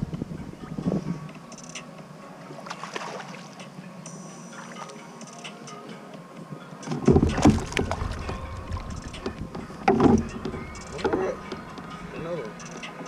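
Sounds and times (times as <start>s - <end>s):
kayak moving on water: 6.2s - 13.0s.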